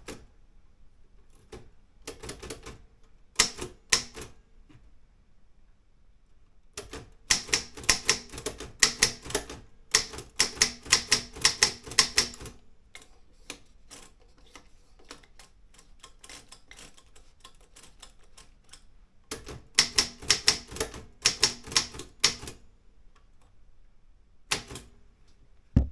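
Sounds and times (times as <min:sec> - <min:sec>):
typewriter typing: 0:06.8 - 0:12.6, 0:19.3 - 0:22.6.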